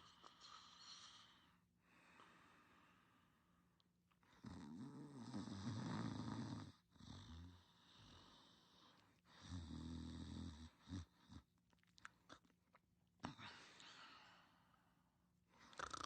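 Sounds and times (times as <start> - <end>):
person snoring: 15.7 - 16.0.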